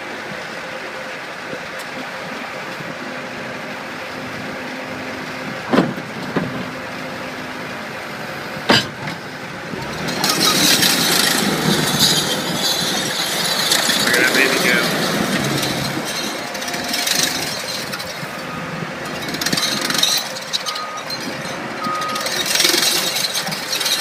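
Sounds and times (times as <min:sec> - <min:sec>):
loader engine drone: 0:00.0 - 0:24.0
sharp metal clanks: 0:08.7 - 0:09.2.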